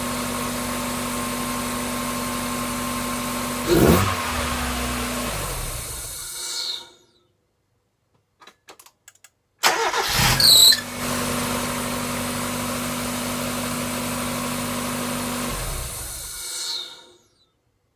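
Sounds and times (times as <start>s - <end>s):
high squeal: 10.2s - 10.9s, 16.4s - 17.3s.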